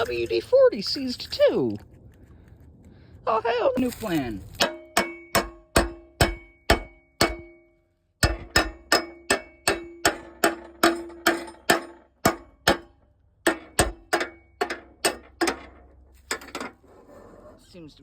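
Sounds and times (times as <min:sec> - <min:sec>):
hammer striking metal: 0:04.6 - 0:16.7.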